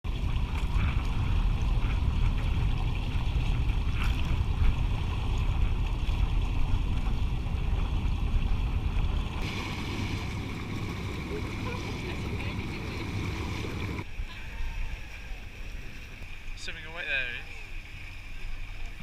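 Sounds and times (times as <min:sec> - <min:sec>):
sea washing: 0:00.0 - 0:19.0
wind rumbling on microphone: 0:00.1 - 0:16.6.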